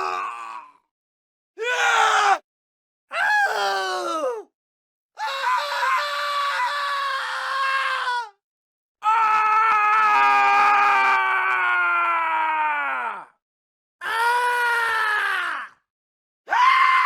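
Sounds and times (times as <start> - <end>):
man screaming: 1.6 - 2.4.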